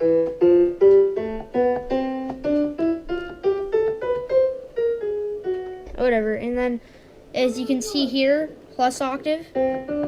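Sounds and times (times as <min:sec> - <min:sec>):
piano notes and chords: 0:00.0 - 0:10.0.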